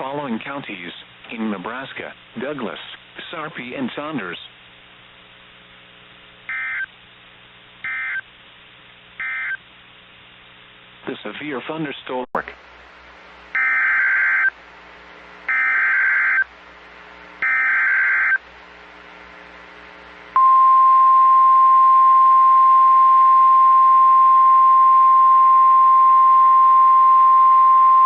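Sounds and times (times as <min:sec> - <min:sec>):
steady warning alarm tone: 0:07.9 - 0:08.2, 0:09.2 - 0:09.6, 0:13.6 - 0:14.5, 0:15.5 - 0:16.5, 0:17.4 - 0:18.4.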